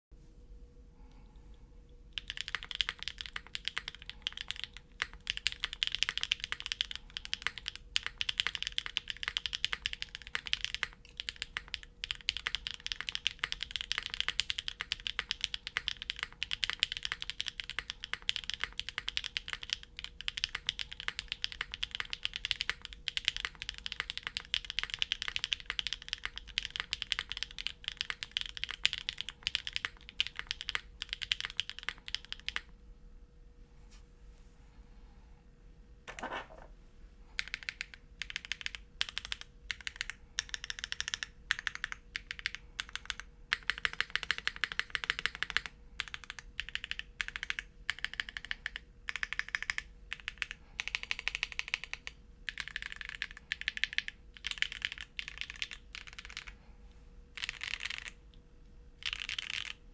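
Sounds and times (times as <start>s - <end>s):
fast mechanical keyboard typing: 2.1s - 32.7s, 37.4s - 56.6s, 57.4s - 58.2s, 59.0s - 59.8s.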